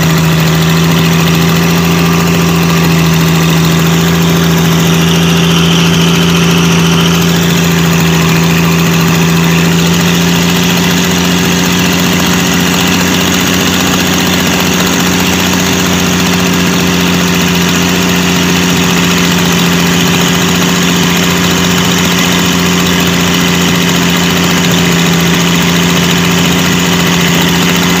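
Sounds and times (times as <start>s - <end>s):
diesel engine running: 0.0s - 28.0s.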